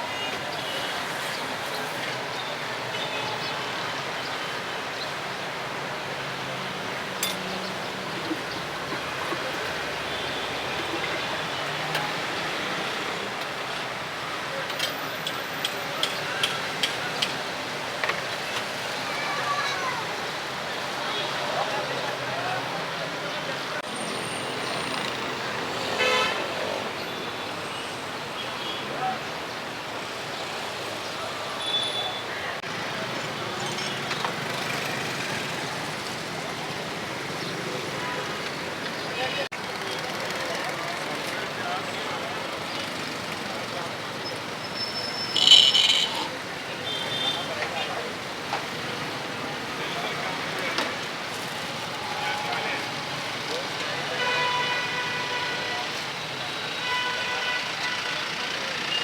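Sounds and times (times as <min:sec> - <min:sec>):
roadside traffic noise: 0:00.0 - 0:59.0
street noise: 0:00.0 - 0:59.0.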